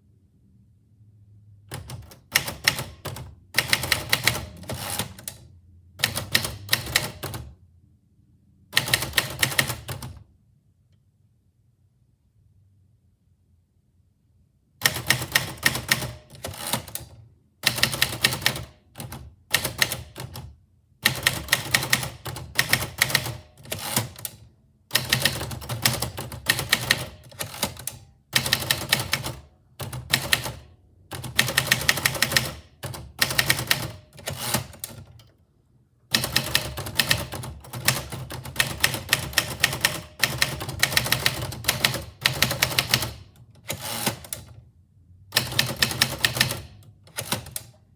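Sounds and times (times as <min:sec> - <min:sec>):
typewriter keys clicking: 0:01.7 - 0:05.4, 0:06.0 - 0:07.5, 0:08.8 - 0:10.2, 0:14.9 - 0:20.5, 0:21.1 - 0:24.4, 0:25.0 - 0:35.3, 0:36.1 - 0:44.5, 0:45.4 - 0:47.8.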